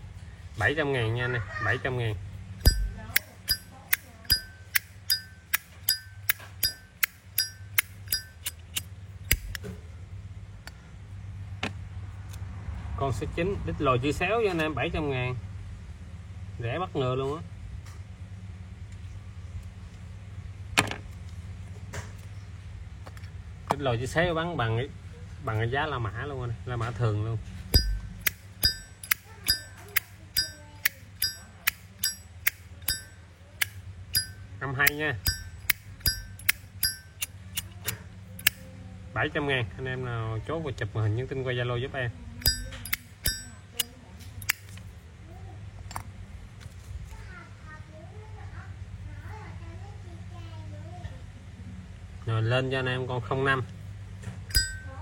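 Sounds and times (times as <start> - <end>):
lighter lid opening with clink: 2.6 - 9.6, 27.8 - 38.6, 42.4 - 44.8, 54.5 - 54.9
lighter lid closing clicks: 3.5 - 9.6
bell-like lighter chime: 31.2 - 32.3, 34.2 - 34.4, 35.3 - 37.3, 42.5 - 43.6, 54.5 - 55.0.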